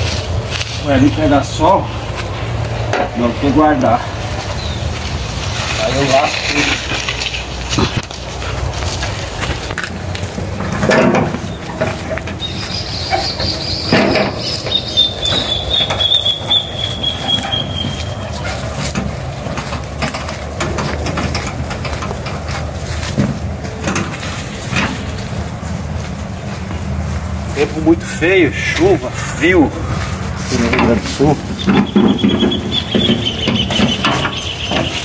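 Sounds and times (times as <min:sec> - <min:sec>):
firewood knocking and thudding: 0:18.7 - 0:25.4.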